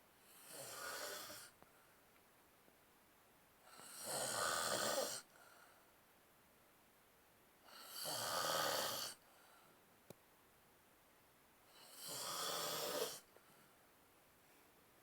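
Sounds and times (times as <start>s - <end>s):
person snoring: 0.4s - 1.5s, 3.7s - 5.3s, 7.7s - 9.2s, 11.8s - 13.2s.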